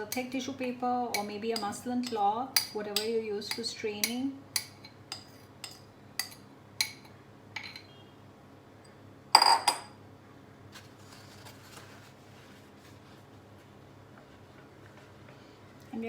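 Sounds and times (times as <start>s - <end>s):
kitchenware clinking: 4.0s - 8.0s, 9.4s - 10.0s
faint rustling: 10.7s - 15.5s.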